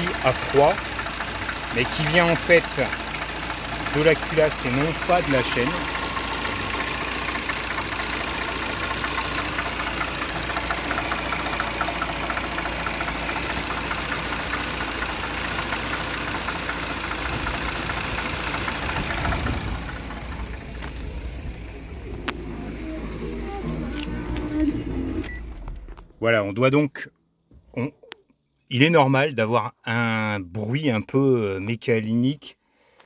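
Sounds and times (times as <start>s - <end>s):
fast mechanical ticking: 0.0s - 23.6s
car engine idling: 0.0s - 26.1s.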